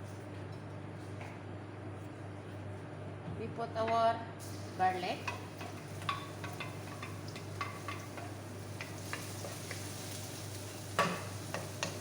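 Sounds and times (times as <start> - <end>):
garlic sizzling in oil: 4.4 - 12.0.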